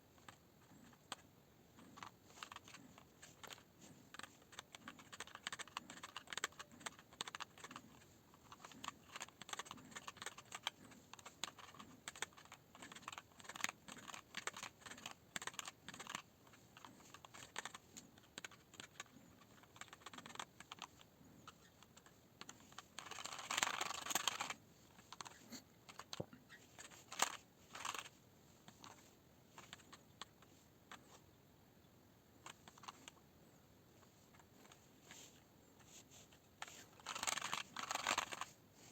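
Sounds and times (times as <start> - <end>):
keyboard keys clicking: 4.5 - 7.8.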